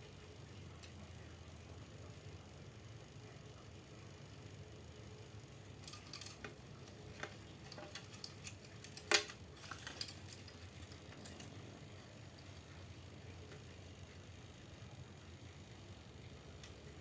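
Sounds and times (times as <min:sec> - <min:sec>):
low steady hum: 0:00.0 - 0:17.0
small hard objects clicking: 0:05.8 - 0:11.6.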